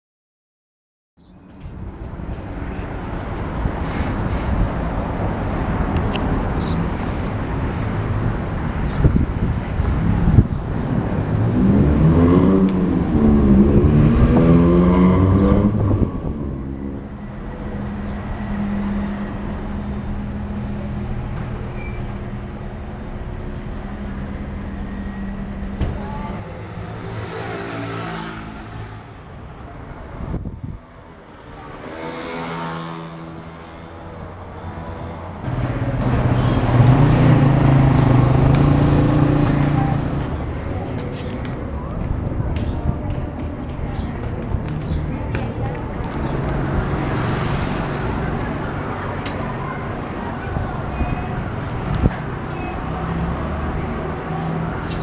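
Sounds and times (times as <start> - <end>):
vehicles pulling away: 1.7 - 30.4, 31.6 - 55.0
vehicle engine revving: 2.8 - 26.4, 34.9 - 42.2
engines idling with low hum: 17.2 - 26.4.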